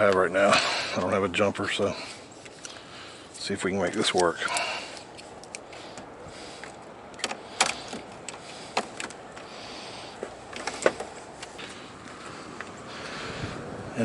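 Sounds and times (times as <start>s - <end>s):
faint steady background noise: 0.0s - 14.0s.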